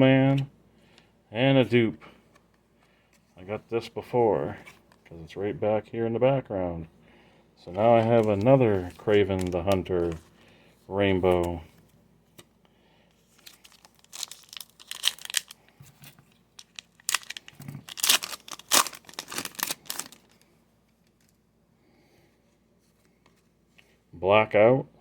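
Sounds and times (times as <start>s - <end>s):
card pack wrapper tearing and crinkling: 7.8s - 10.3s, 13.2s - 20.5s.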